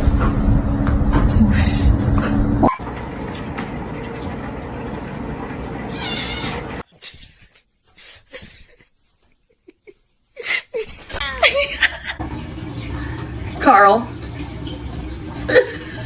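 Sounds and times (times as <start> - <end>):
cat meowing: 5.9 - 6.6.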